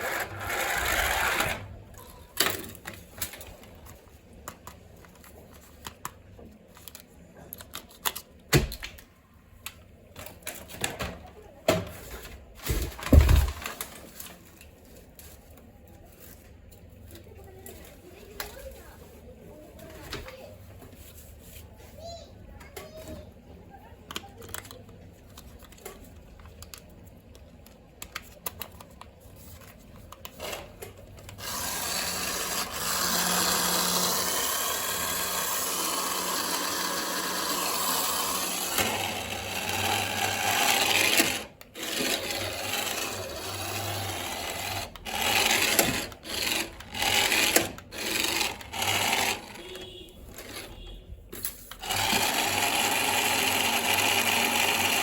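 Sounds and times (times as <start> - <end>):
toy car electric motor running: 0.0 - 2.2, 31.3 - 51.0, 51.8 - 55.0.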